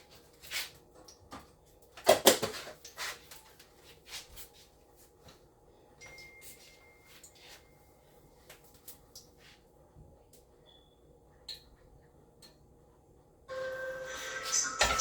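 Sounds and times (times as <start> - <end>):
cookware and utensils clinking: 14.1 - 15.0.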